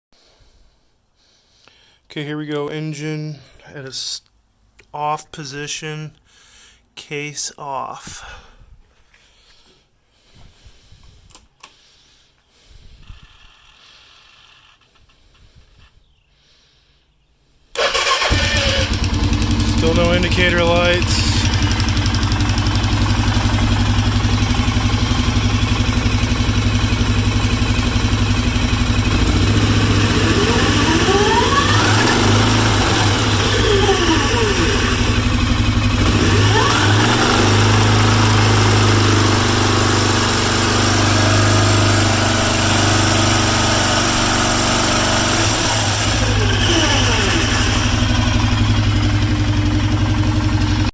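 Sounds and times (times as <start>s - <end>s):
engine idling and revving: 17.8s - 50.9s.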